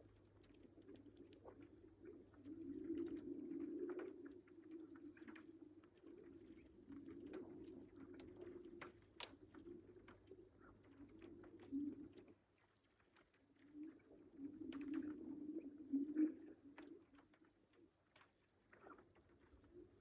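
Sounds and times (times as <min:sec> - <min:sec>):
ice cracks and ticks: 0:09.2 - 0:09.4.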